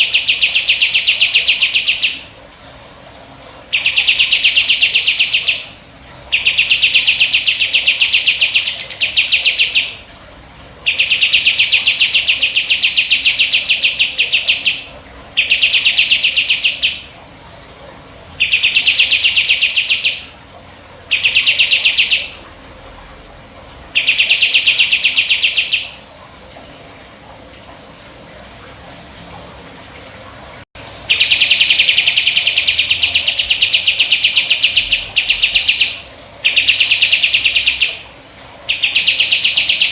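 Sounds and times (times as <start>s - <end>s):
bird singing high trills: 0.0s - 2.2s, 3.7s - 5.7s, 6.3s - 10.0s, 10.9s - 17.0s, 18.4s - 20.3s, 21.1s - 22.4s, 24.0s - 26.0s, 31.1s - 38.0s, 38.7s - 39.9s.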